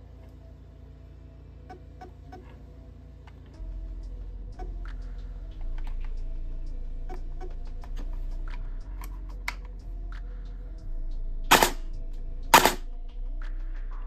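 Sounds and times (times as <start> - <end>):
airsoft gun burst fire: 12.6 - 12.8.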